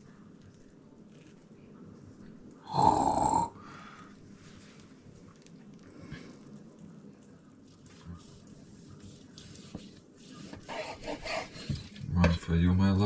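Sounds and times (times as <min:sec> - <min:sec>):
rough snort or grunt: 0:02.7 - 0:03.5.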